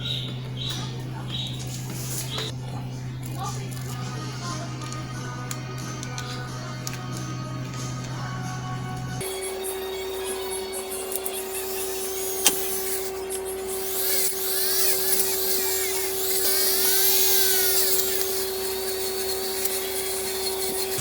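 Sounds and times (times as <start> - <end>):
power tool motor whining: 9.2 - 21.0.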